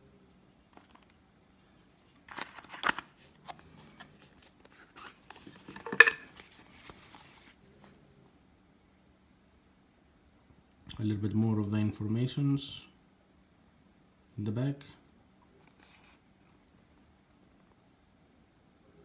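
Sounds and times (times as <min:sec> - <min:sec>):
box handling rustling: 0:00.8 - 0:07.6.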